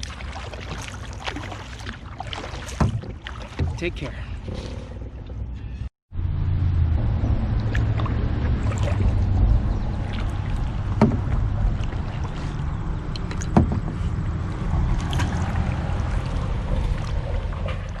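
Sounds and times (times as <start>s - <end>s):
water and wind rumble: 0.0s - 18.0s
sharp knocks: 10.9s - 11.4s, 13.5s - 14.0s.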